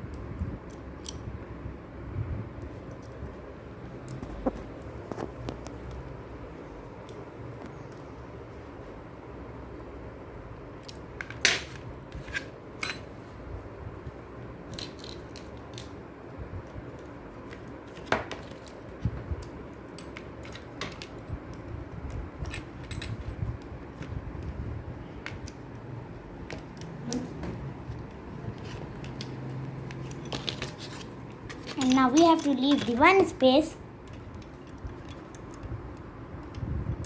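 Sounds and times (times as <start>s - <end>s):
small metal parts clicking: 14.7s - 16.0s, 28.9s - 33.2s, 34.0s - 36.6s.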